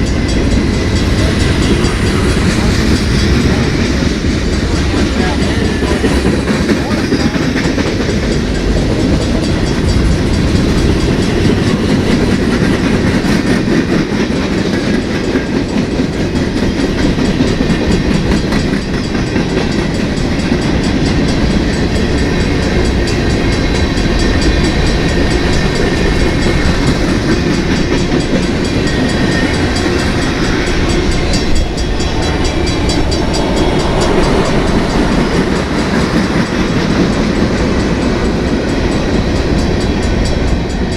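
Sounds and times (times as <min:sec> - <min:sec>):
clickety-clack over rail joints: 0:00.0 - 0:40.9
train wheels rumbling on rails: 0:00.0 - 0:40.9.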